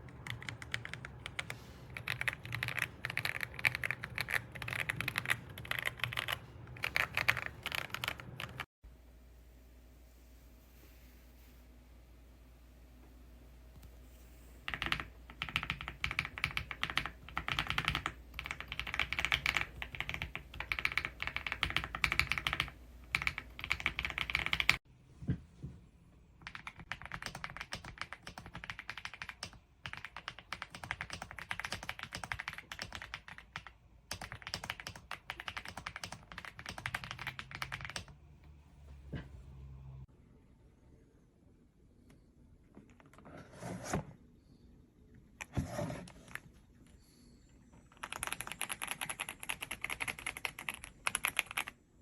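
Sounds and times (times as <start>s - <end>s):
fast typing on keyboard: 0.0s - 8.7s, 14.6s - 24.8s, 26.4s - 38.2s, 47.8s - 51.8s.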